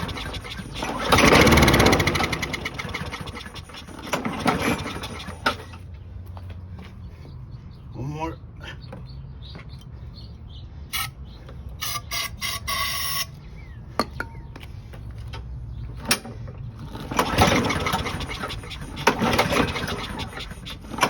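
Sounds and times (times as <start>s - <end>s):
lawn mower engine running: 0.0s - 5.9s, 15.4s - 21.0s
bird calls: 0.0s - 12.4s, 13.2s - 21.0s.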